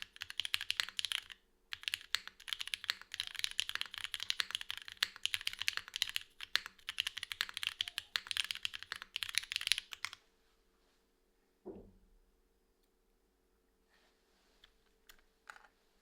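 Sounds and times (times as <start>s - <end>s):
fast mechanical keyboard typing: 0.0s - 10.2s
short low thump: 11.6s - 12.1s.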